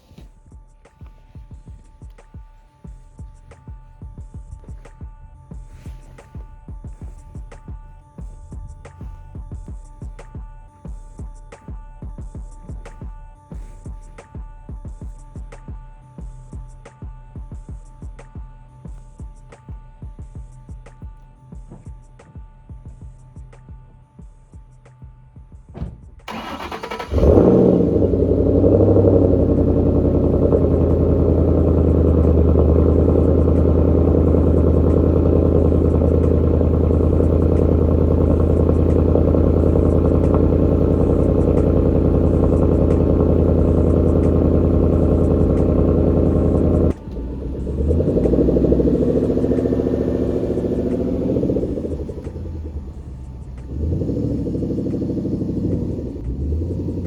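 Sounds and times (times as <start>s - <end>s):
car engine idling: 1.1s - 10.3s, 25.8s - 57.0s
engine starter cranking: 25.8s - 57.0s.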